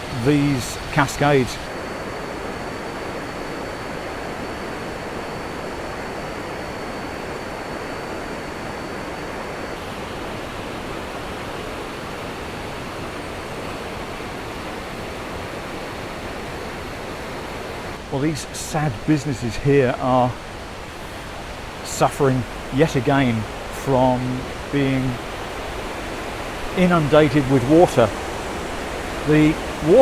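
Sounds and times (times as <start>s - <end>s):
water rushing over rocks: 20.9s - 30.0s.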